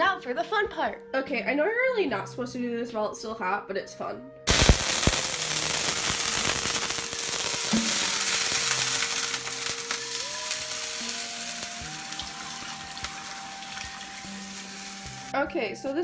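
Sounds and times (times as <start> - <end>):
water sizzling in hot pan: 4.5 - 15.4.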